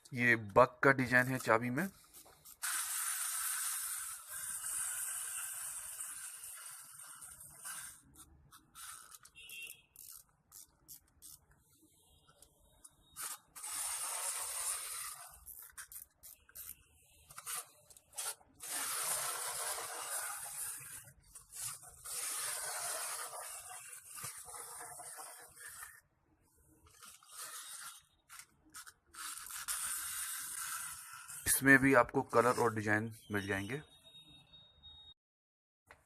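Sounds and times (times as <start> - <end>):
clockwork motor whirring: 2.6 - 8.0, 13.2 - 16.7, 18.2 - 26.0, 26.9 - 31.6.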